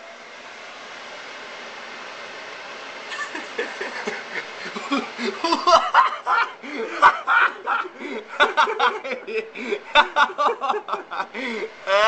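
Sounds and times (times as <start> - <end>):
people laughing: 3.1 - 12.0.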